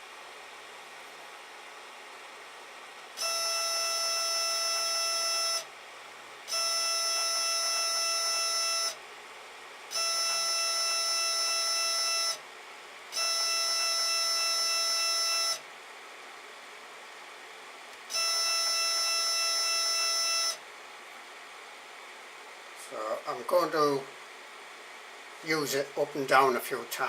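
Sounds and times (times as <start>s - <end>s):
stepper motors whining: 3.2s - 5.7s, 6.5s - 9.0s, 9.9s - 12.4s, 13.1s - 15.6s, 18.1s - 20.6s.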